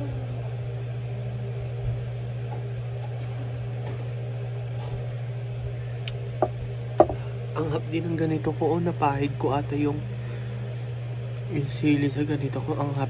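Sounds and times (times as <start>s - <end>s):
low mechanical hum: 0.0s - 13.0s
faint knock: 6.4s - 7.2s.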